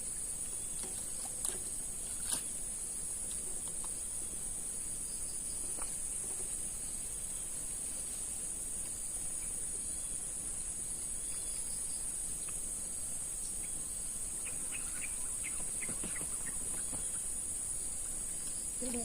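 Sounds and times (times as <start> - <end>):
insects droning: 0.0 - 19.0
faint bird chirps: 9.3 - 12.6, 13.4 - 19.0.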